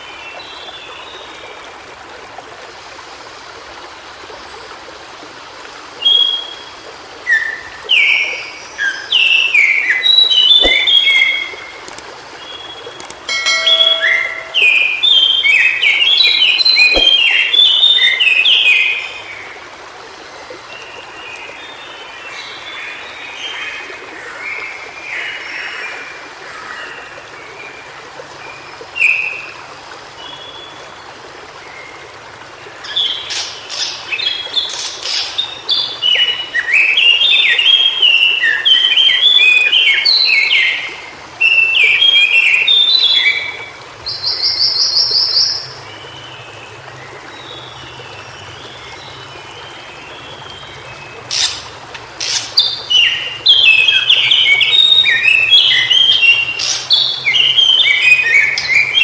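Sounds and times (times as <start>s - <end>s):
bird warbling song: 7.3s - 19.0s, 49.6s - 59.0s.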